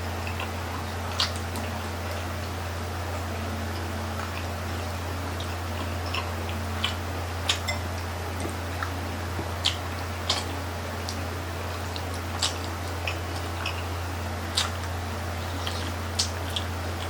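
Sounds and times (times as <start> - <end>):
steady low hum: 0.0 - 17.0
chewing and mouth smacks: 0.2 - 2.6, 3.7 - 17.0.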